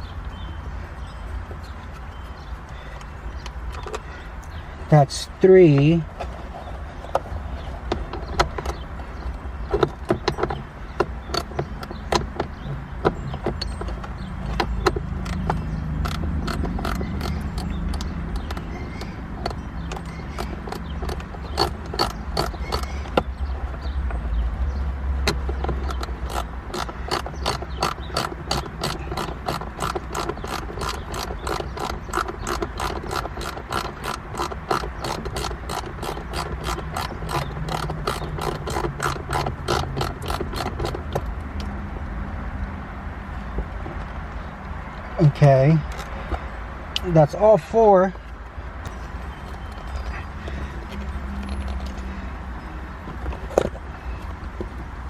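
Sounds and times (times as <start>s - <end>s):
ratchet wrench clicking: 14.9s - 23.2s, 25.3s - 41.2s.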